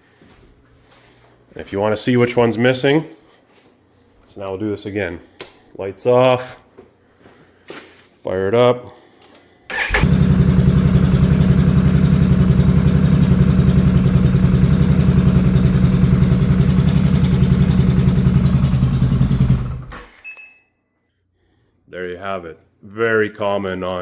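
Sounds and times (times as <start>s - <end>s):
engine starting and idling: 9.7s - 20.2s.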